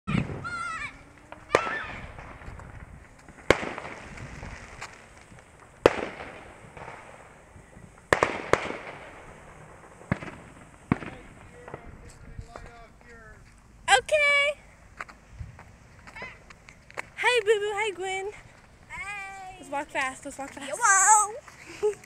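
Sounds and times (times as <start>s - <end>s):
fireworks bangs echoing: 0.1s - 12.9s.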